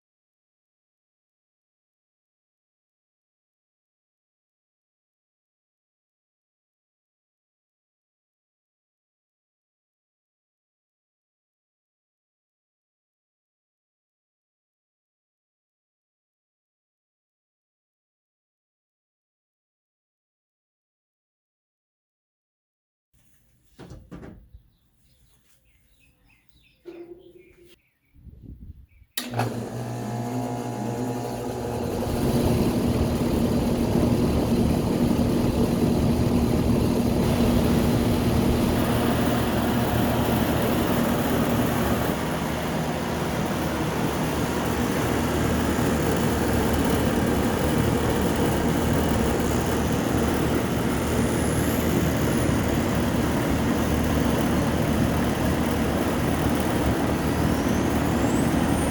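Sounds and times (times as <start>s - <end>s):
condenser fan and compressor running: 29.2s - 58.9s
electrical hum: 29.2s - 58.9s.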